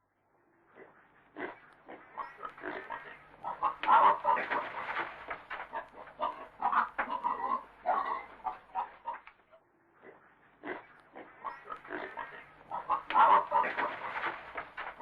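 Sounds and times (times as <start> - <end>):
pig grunting and oinking: 0.8 - 4.8, 5.7 - 9.2, 10.0 - 14.2.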